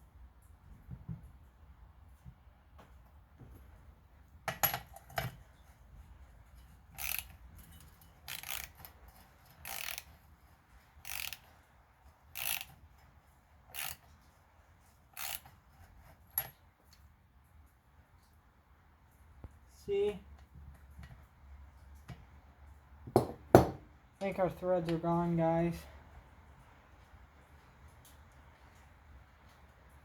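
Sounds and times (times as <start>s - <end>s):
wrench clicks: 6.9s - 10.3s, 11.0s - 11.6s, 12.3s - 12.8s, 13.7s - 14.1s, 15.2s - 15.6s
wrench rasping strokes: 6.9s - 10.3s, 11.0s - 11.6s, 12.3s - 13.0s, 13.7s - 14.1s, 15.2s - 16.2s.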